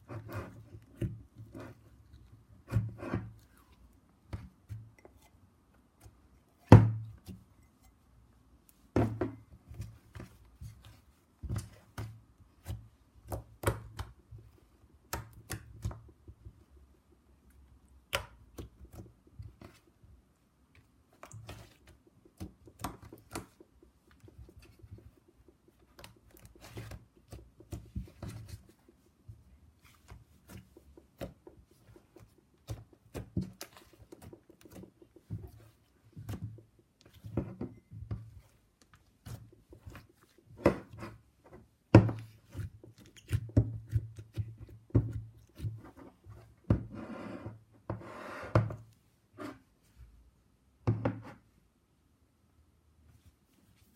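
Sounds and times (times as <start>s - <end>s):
slime squishing by hand: 8.6s - 46.9s.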